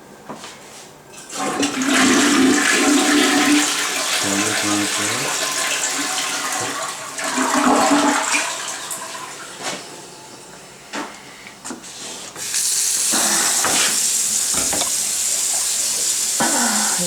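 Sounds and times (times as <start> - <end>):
toilet flushing: 1.2 - 10.9, 11.9 - 17.0
hiss of running water: 4.2 - 5.5, 12.0 - 17.0.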